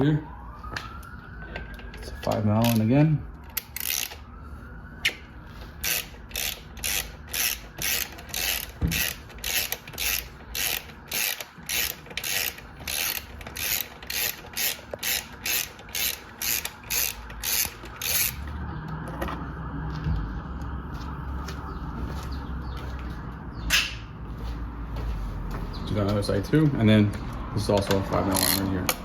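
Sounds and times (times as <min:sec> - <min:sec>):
ratchet pawl clicking: 0:02.6 - 0:02.8, 0:03.5 - 0:04.2, 0:05.8 - 0:18.4, 0:27.7 - 0:29.0.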